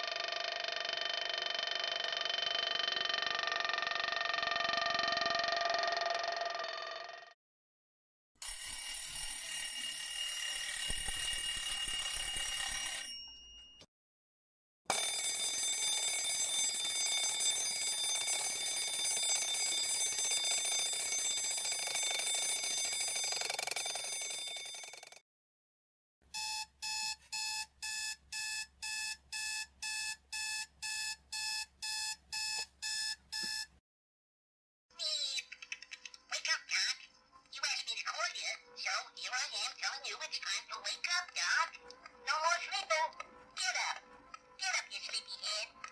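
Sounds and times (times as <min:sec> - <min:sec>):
alarm clock ringing: 0:00.8 - 0:06.2, 0:08.4 - 0:13.9, 0:14.9 - 0:25.2, 0:26.4 - 0:33.7.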